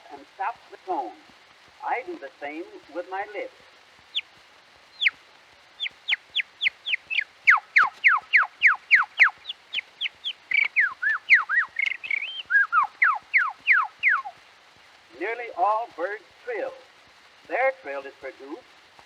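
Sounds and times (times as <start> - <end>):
faint regular ticks: 0.0 - 19.0.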